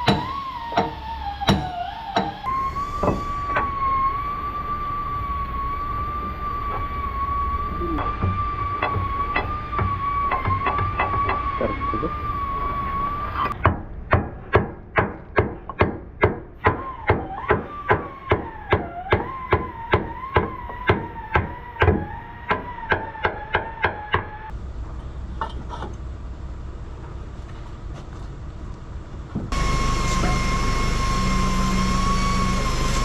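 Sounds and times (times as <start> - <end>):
steady high whine: 29.6 - 33.0.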